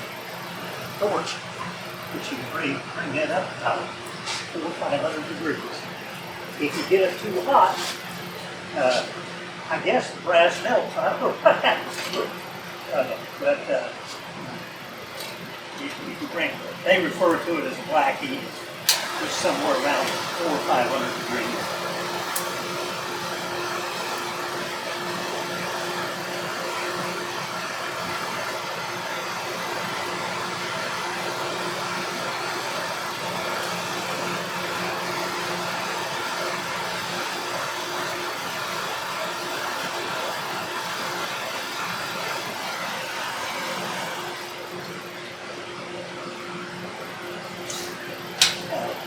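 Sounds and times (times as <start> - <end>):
torch flame hissing: 16.4 - 44.7
sharp click: 47.7 - 48.7.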